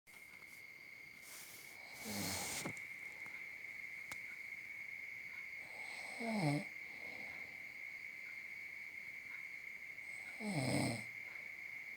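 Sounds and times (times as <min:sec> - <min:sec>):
man snoring: 0:01.8 - 0:02.7, 0:05.7 - 0:06.7, 0:10.3 - 0:11.1.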